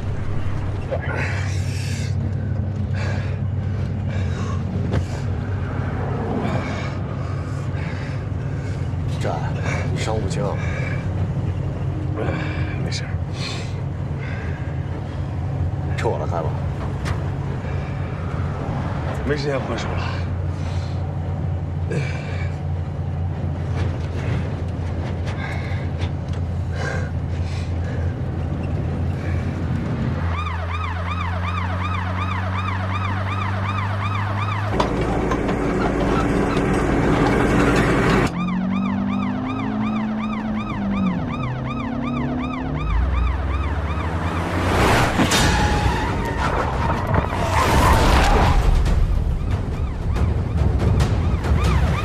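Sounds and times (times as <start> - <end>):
police siren wailing: 29.2 - 52.0.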